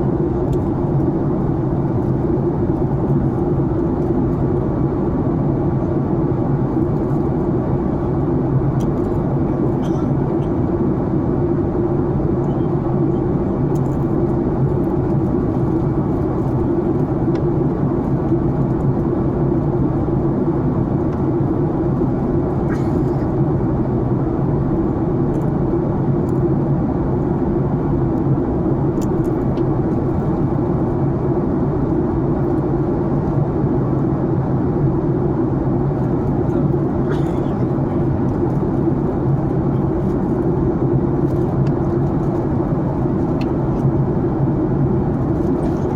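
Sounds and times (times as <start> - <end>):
airliner cabin engine drone: 0.0 - 45.9.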